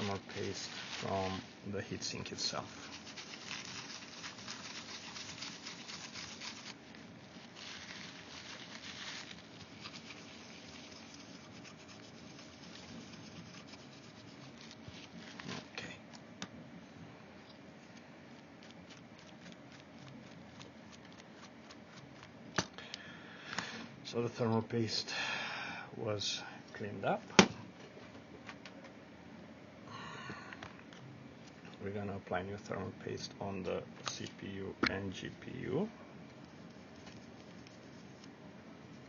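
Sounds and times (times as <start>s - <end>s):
rubbing and scratching on heatsink: 0.0s - 16.4s, 17.5s - 22.5s, 35.1s - 39.0s.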